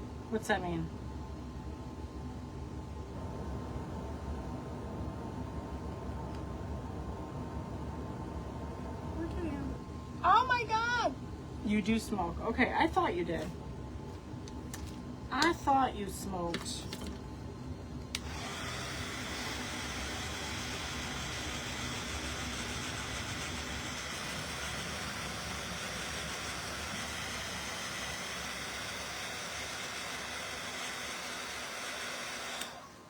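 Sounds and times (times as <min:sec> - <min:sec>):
hot-air blower whooshing: 0:18.0 - 0:33.0.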